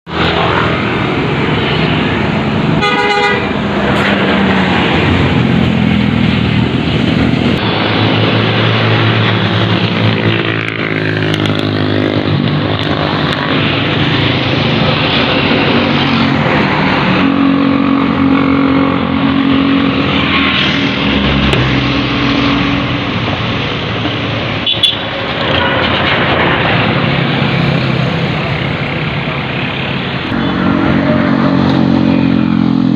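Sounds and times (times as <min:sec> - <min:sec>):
bus engine: 0:00.0 - 0:32.9
traffic noise: 0:00.0 - 0:32.9
multi-tone bus horn: 0:02.8 - 0:03.6, 0:24.6 - 0:25.1.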